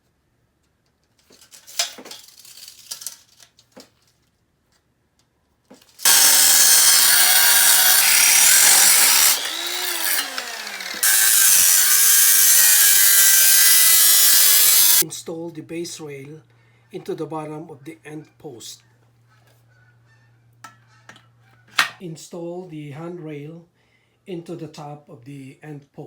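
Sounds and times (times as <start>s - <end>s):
power saw cutting: 6.0s - 15.0s.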